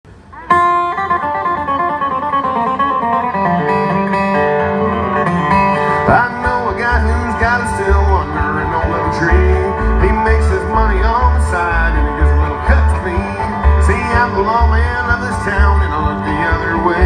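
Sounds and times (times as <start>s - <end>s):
bluegrass string band playing: 0.1s - 17.0s.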